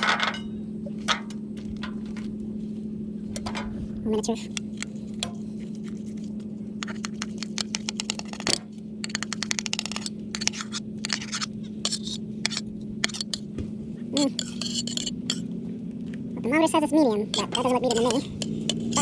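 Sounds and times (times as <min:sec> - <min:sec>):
steady low hum: 0:00.0 - 0:19.0
knife sawing through steak: 0:14.2 - 0:15.4.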